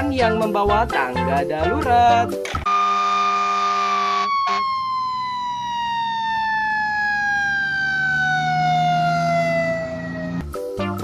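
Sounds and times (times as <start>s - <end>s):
fire engine siren winding down: 2.7s - 10.4s.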